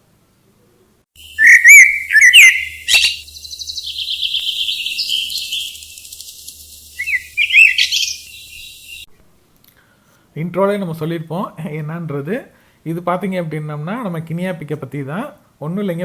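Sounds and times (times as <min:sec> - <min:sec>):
bird chattering trill: 0:01.2 - 0:09.1
birds whistled calls: 0:01.2 - 0:09.1.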